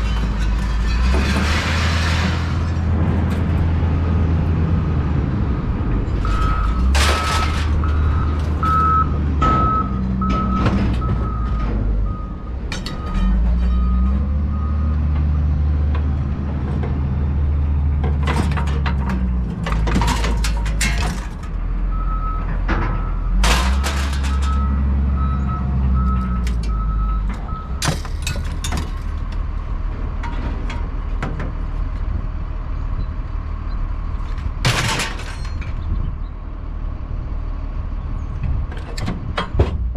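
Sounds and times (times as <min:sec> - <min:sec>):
clatters and bangs: 0:00.0 - 0:03.8, 0:05.9 - 0:08.7, 0:18.0 - 0:21.6, 0:22.5 - 0:24.7, 0:34.3 - 0:36.0
reversing alarm beeps: 0:07.9 - 0:14.9.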